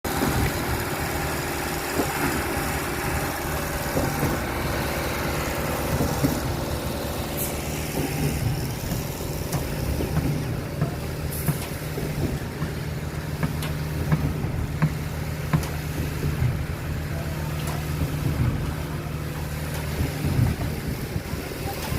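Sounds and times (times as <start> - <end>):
diesel engine running: 0.0 - 21.9
sharp knocks and clatter: 7.8 - 16.7.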